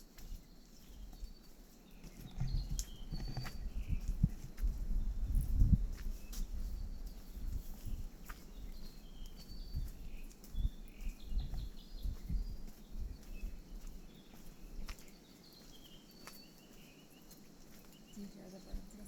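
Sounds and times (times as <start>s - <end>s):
birds chirping: 0.0s - 19.0s
low thumps on microphone: 2.1s - 6.1s.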